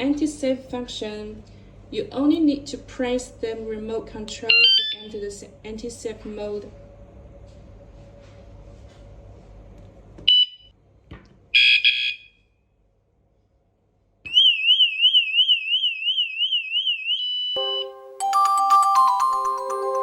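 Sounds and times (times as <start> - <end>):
warbling electronic alarm siren: 4.5 - 5.1, 10.3 - 10.7, 11.6 - 12.4, 14.3 - 18.2.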